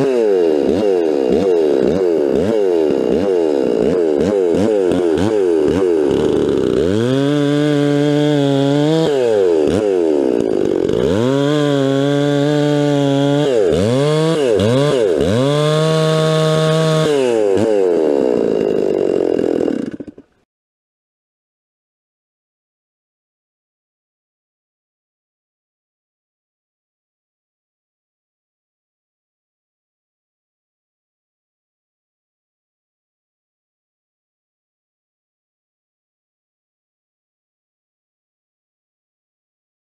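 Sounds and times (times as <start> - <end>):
chainsaw revving: 0.0 - 20.4.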